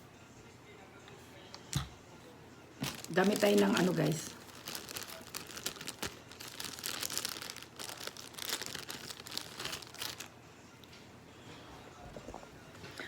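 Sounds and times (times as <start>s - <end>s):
plastic packaging crinkling: 2.8s - 10.3s.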